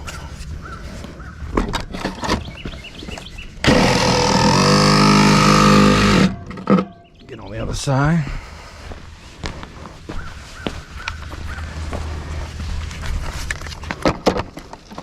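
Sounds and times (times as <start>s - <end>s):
reciprocating saw cutting pipe: 3.6s - 6.4s
faint bird chirps: 6.8s - 7.8s.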